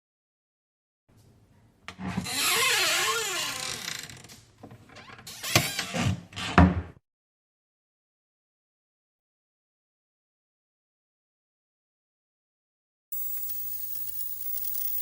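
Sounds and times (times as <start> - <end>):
door hinge creak: 2.2 - 4.3, 4.9 - 6.7.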